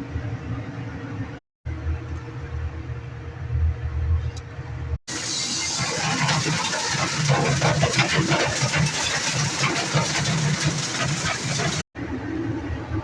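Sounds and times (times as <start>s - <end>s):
duct cleaning machine running: 5.1s - 11.8s.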